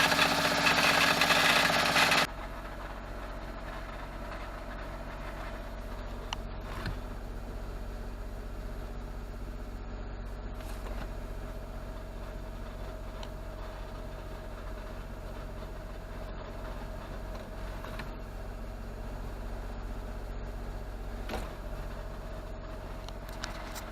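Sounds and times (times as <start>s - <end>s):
small engine running: 0.0s - 7.2s.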